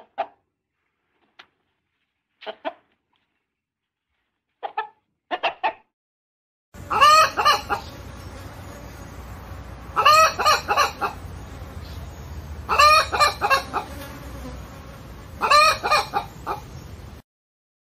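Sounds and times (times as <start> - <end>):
hen clucking: 0.0 - 0.4, 2.4 - 2.9, 4.6 - 5.9, 6.8 - 8.4, 9.9 - 14.1, 15.4 - 16.9.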